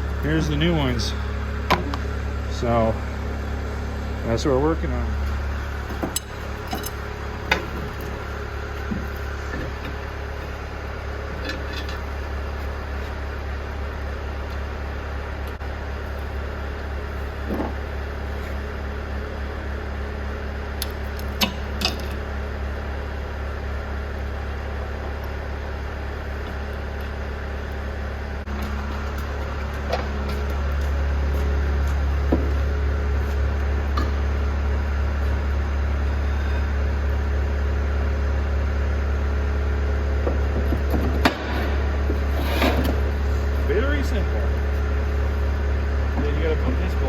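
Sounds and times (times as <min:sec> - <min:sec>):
low mechanical hum: 0:00.0 - 0:47.0.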